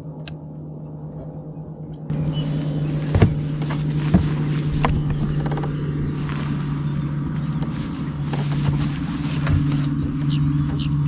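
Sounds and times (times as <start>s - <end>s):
boat motor humming: 2.1s - 11.0s
sharp knocks: 3.2s - 6.3s.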